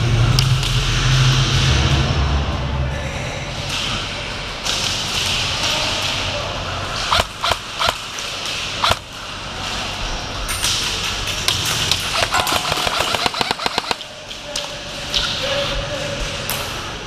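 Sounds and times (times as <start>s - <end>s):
airsoft guns firing: 7.1s - 8.1s, 8.8s - 9.1s, 11.9s - 14.1s.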